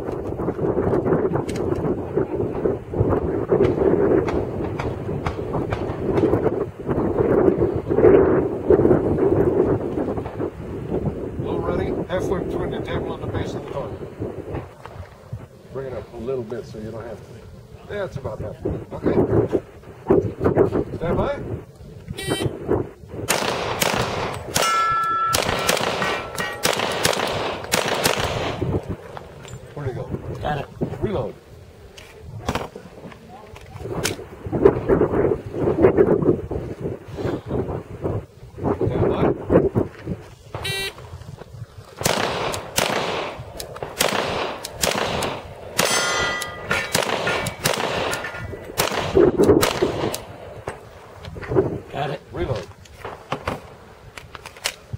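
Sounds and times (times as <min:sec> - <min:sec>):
pistol shots: 0:23.3 - 0:28.8, 0:42.0 - 0:50.4
ringing steel targets: 0:24.2 - 0:27.6, 0:45.8 - 0:48.6.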